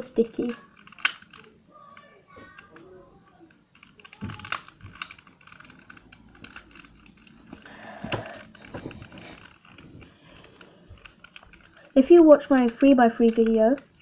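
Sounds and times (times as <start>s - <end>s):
plastic clicks and scratches: 0.2s - 14.0s.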